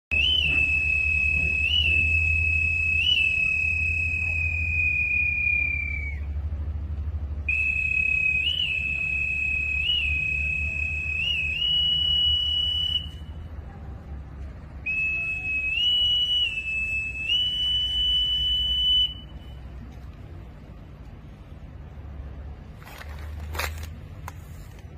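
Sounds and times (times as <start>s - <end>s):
whistle blasts: 0.1s - 6.6s, 7.4s - 13.6s, 14.8s - 19.7s.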